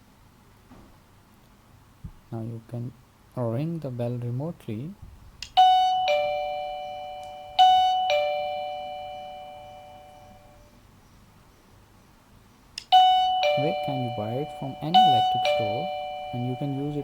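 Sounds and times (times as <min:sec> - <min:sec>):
doorbell ding-dong chime: 0:05.6 - 0:10.6, 0:12.9 - 0:17.0.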